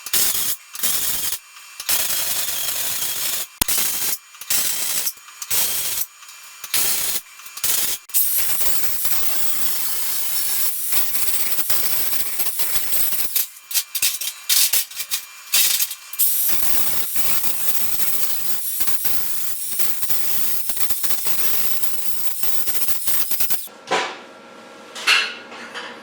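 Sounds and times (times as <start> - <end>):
welding arc crackling and hissing: 0.0 - 23.7.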